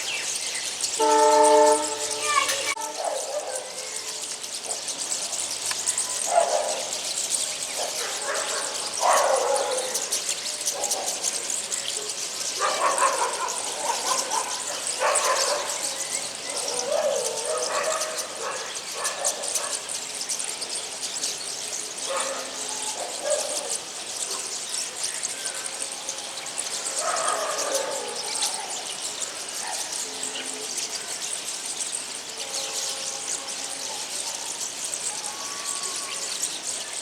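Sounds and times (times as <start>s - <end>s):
high-pitched hiss: 0.0s - 3.1s, 29.2s - 37.0s
small birds chirping: 0.0s - 37.0s.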